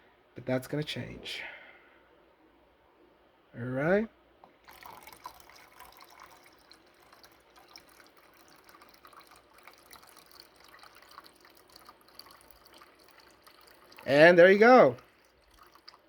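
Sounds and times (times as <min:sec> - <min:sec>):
small water drips: 0:04.4 - 0:16.0
water poured into a mug: 0:04.6 - 0:16.0.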